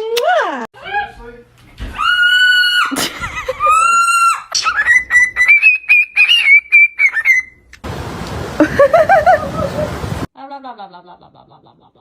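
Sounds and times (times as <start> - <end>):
parrot whistling: 4.6 - 7.6.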